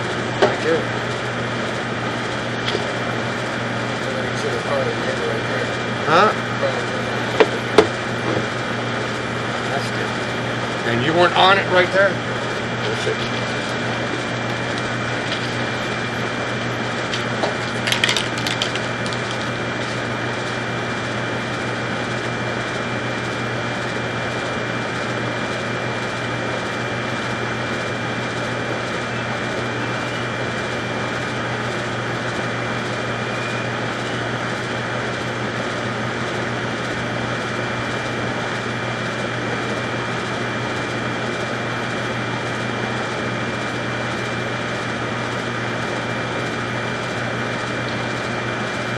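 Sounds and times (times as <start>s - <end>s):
mechanical hum: 0.0s - 48.9s
clatter of clicks: 17.1s - 19.6s.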